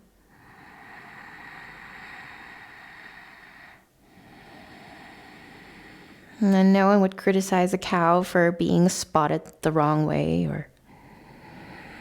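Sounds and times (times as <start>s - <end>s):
person breathing: 0.0s - 6.4s, 10.8s - 12.0s.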